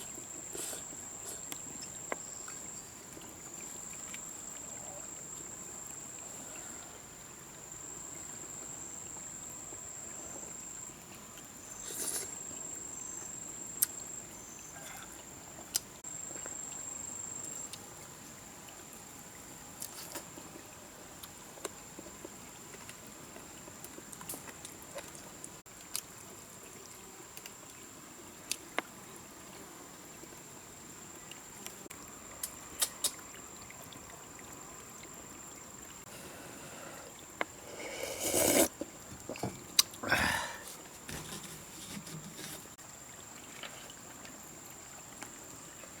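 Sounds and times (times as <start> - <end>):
water trickling: 0.0 - 46.0.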